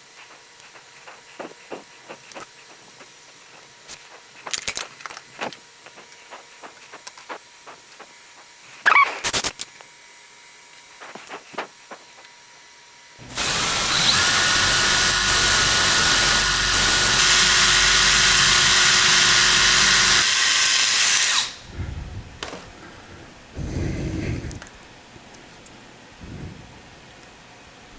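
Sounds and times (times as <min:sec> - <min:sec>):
electric drill running: 0:13.2 - 0:21.7.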